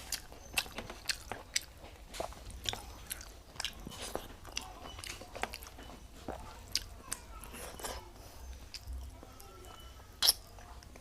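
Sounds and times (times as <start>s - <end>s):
person chewing food: 0.0s - 11.0s
wet mouth clicks and smacks: 10.2s - 10.5s.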